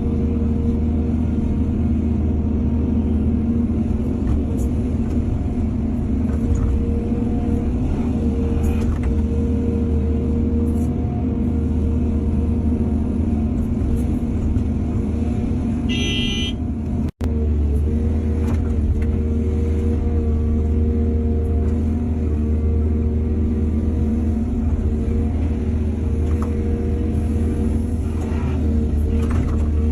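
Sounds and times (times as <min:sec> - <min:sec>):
brief high-pitched tone: 0:15.9 - 0:16.6.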